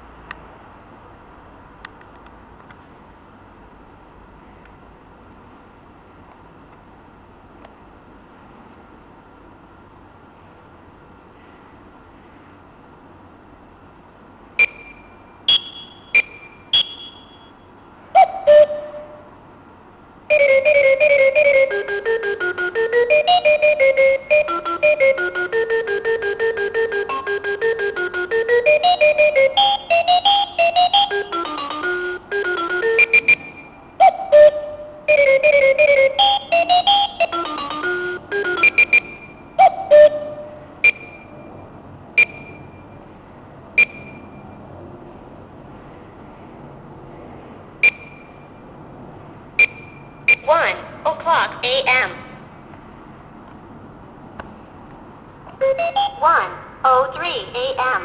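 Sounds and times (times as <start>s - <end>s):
alarm clock electronic beeps: 14.6s - 17.6s, 20.3s - 41.5s, 42.2s - 43.0s, 43.8s - 44.4s, 47.8s - 48.5s, 49.6s - 50.5s, 55.6s - 56.2s
electronic alarm tune: 14.6s - 17.6s, 18.2s - 19.4s, 20.3s - 43.1s, 43.8s - 44.6s, 47.8s - 48.6s, 49.6s - 50.5s, 55.6s - 56.6s.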